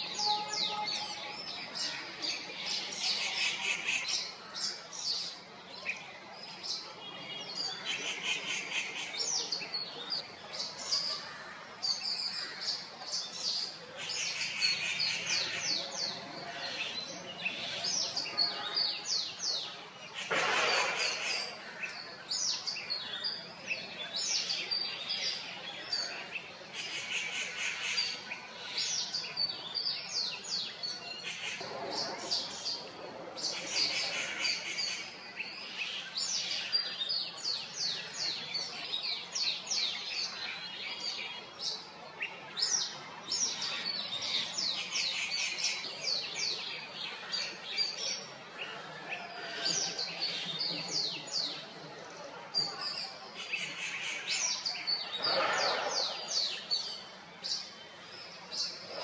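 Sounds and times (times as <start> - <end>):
birds chirping: 0.0 - 59.0
harsh noisy sound: 20.2 - 21.4.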